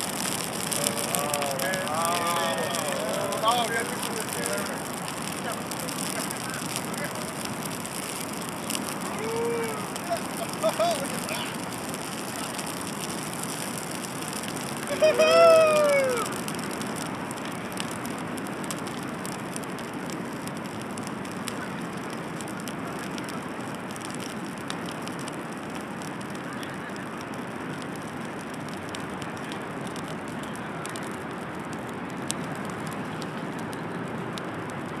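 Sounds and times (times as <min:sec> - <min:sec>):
bonfire crackling and popping: 0:00.0 - 0:35.0
steady rushing noise: 0:00.0 - 0:35.0.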